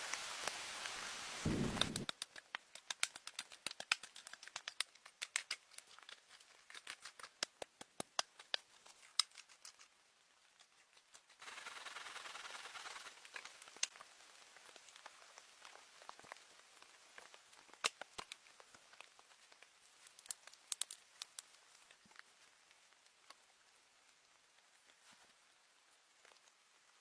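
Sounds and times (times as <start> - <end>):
steady hiss: 0.0 - 2.1, 11.4 - 22.9
small sharp clicks and crackles: 1.6 - 27.0.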